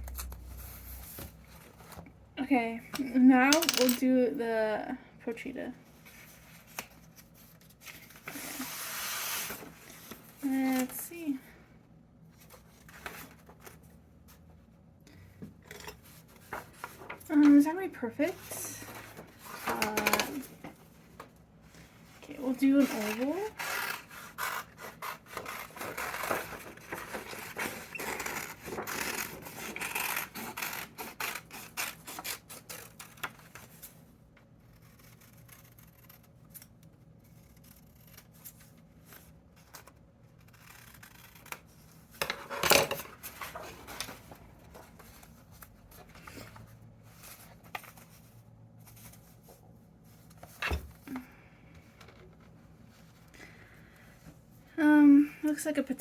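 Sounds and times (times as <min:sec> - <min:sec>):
paper rustling: 0:16.0 - 0:17.6, 0:43.0 - 0:50.6
scissors cutting paper: 0:22.4 - 0:33.8, 0:34.6 - 0:42.6.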